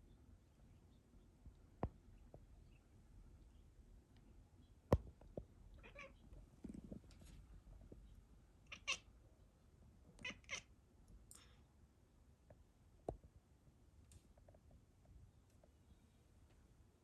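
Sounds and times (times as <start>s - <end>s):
cat chirping: 5.8s - 6.2s, 8.7s - 9.1s, 10.2s - 10.7s.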